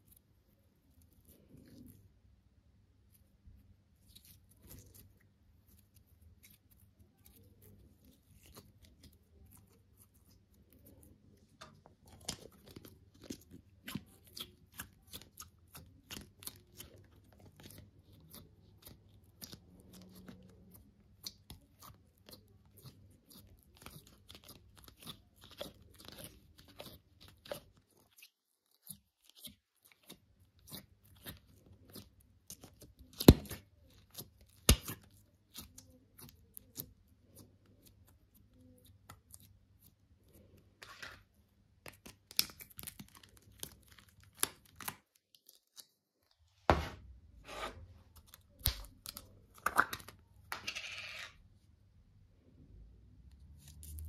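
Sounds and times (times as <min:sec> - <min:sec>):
slime clicking and crackling: 0:12.0 - 0:37.0, 0:41.9 - 0:46.0.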